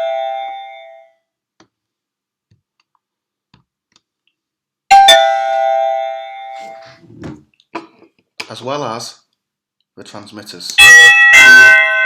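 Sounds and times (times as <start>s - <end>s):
electronic doorbell chime: 0.0s - 1.2s, 4.9s - 6.9s, 10.8s - 12.0s.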